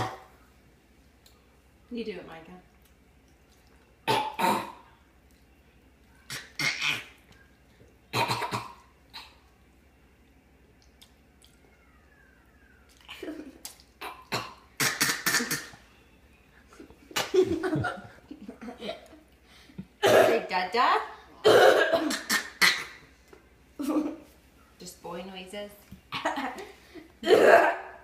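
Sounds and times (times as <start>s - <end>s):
child imitation coughing: 0.0s - 0.3s, 6.3s - 7.2s, 8.1s - 9.4s, 13.2s - 15.8s, 20.0s - 20.4s, 21.4s - 23.0s, 27.2s - 28.0s.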